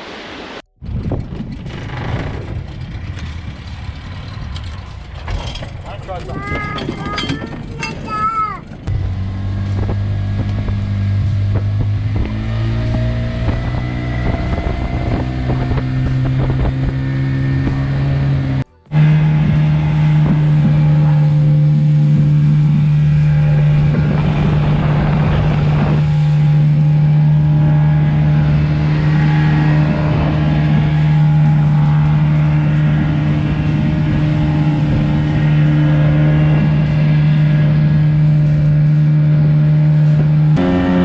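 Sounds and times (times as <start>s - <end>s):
outboard motor running: 0.8s - 41.0s
rush of wind or spray: 22.8s - 38.9s.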